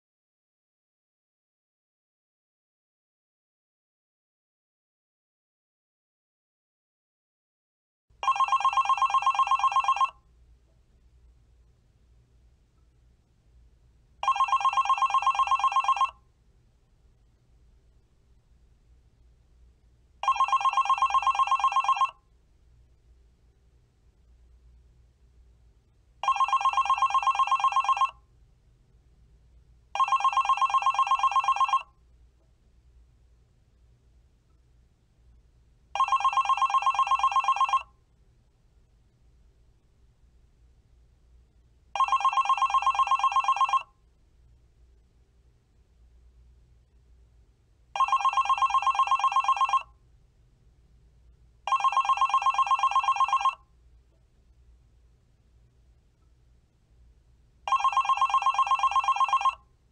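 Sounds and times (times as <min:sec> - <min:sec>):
telephone ringing: 0:08.2 - 0:10.3, 0:14.2 - 0:16.2, 0:20.2 - 0:22.2, 0:26.2 - 0:28.2, 0:30.0 - 0:32.0, 0:36.0 - 0:38.0, 0:42.0 - 0:44.0, 0:48.0 - 0:50.0, 0:51.6 - 0:53.7, 0:57.7 - 0:59.7.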